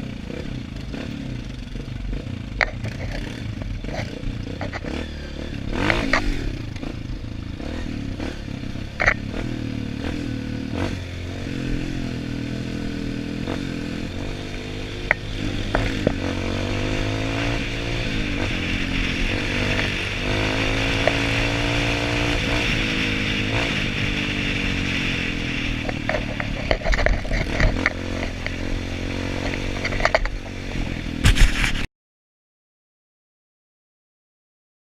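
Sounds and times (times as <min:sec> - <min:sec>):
motorcycle engine revving: 0:00.0 - 0:31.9
sharp knocks and clatter: 0:14.5 - 0:16.3, 0:25.8 - 0:28.6, 0:29.4 - 0:30.6.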